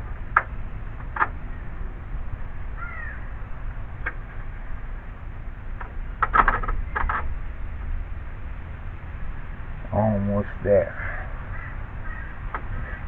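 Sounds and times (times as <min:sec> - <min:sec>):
crow cawing: 0:02.8 - 0:03.4, 0:11.0 - 0:13.0.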